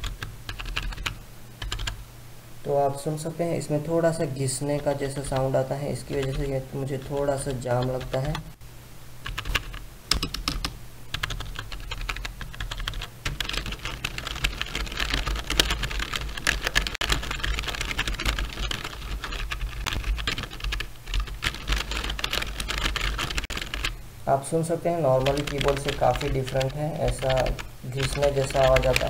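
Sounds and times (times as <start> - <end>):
fast typing on keyboard: 0.0 - 2.0, 4.6 - 8.6, 9.2 - 24.0, 25.0 - 29.0
keys grinding and rubbing: 12.6 - 23.9.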